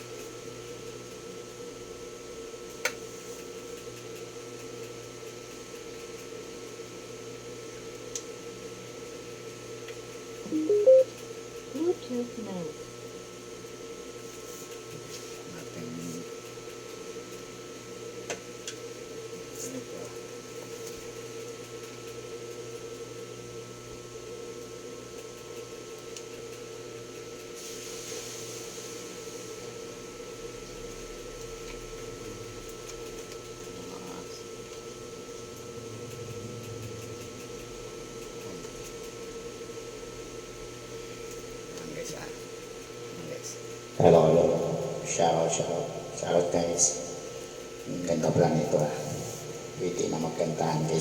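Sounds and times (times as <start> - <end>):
low electrical hum: 0.0 - 51.0
faint high whine: 10.5 - 11.2.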